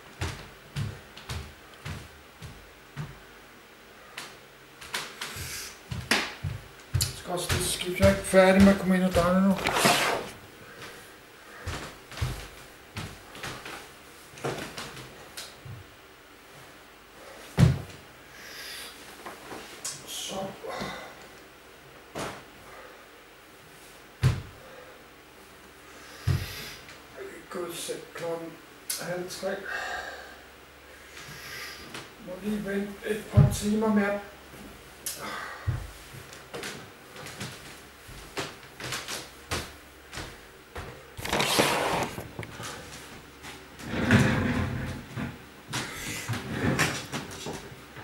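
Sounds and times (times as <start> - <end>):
rustling and scraping: 7.0 - 15.1, 40.8 - 47.7
short rustle: 41.2 - 43.1.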